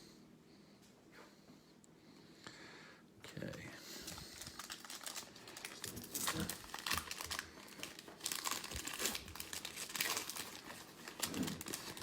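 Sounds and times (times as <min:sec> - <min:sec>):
foil wrapper crinkling and tearing: 0:04.0 - 0:12.0.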